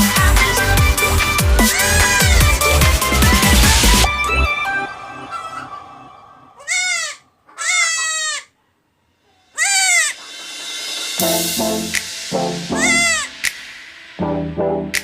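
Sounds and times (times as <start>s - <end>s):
background music: 0.0s - 6.7s, 9.6s - 15.0s
goat kid bleating: 1.6s - 2.6s, 6.6s - 8.5s, 9.6s - 10.2s, 12.8s - 13.3s.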